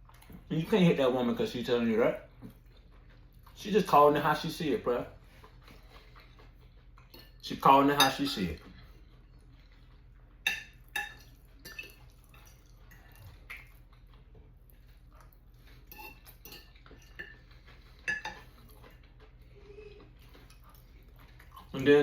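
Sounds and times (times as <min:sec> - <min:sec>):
cutlery clinking on a plate: 0:10.5 - 0:12.0, 0:15.9 - 0:17.4, 0:18.0 - 0:18.5.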